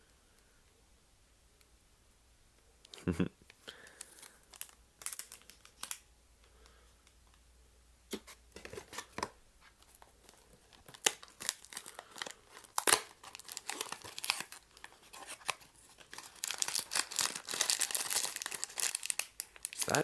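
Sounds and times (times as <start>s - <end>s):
packaging tearing and crinkling: 4.0s - 6.0s, 8.6s - 20.0s
packaging snap: 12.6s - 14.6s.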